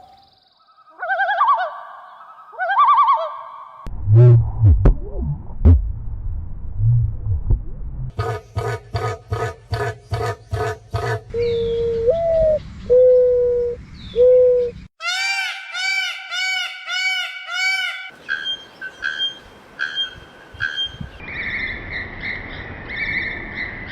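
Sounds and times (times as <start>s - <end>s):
bird chirping rapidly: 18.2s - 23.3s.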